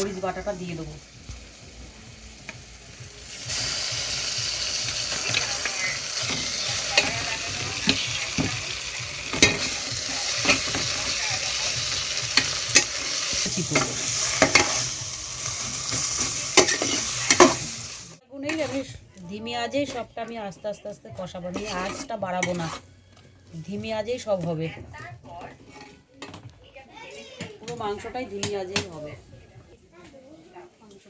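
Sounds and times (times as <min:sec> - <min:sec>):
onions sizzling in oil: 0:00.0 - 0:18.9, 0:21.6 - 0:22.8
spoon scraping a pan: 0:03.3 - 0:26.5.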